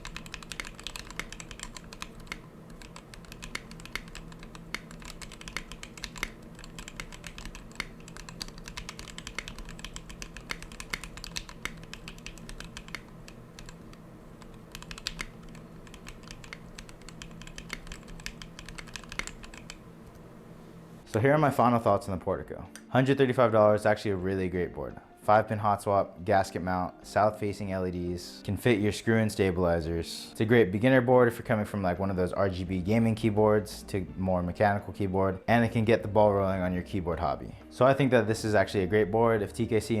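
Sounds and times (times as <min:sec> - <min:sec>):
mechanical keyboard typing: 0:00.0 - 0:19.8.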